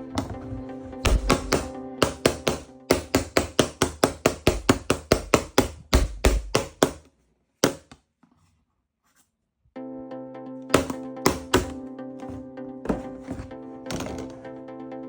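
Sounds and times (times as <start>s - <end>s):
rapid sharp knocks: 1.0s - 7.9s, 10.8s - 11.8s.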